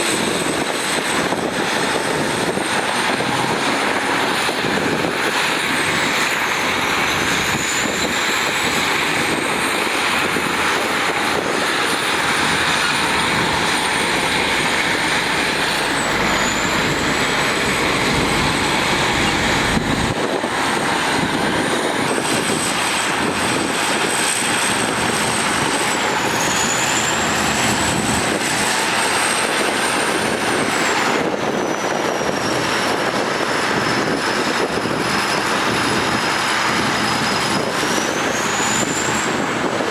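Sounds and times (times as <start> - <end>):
heavy diesel machinery running: 0.0 - 39.9
thin high whine: 6.2 - 30.0.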